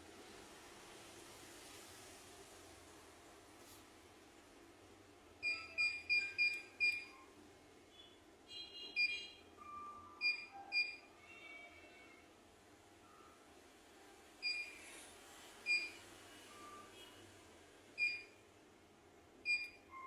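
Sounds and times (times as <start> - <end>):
electronic key-press beeps: 5.4 - 7.2, 9.0 - 11.1, 18.0 - 18.4, 19.5 - 20.0.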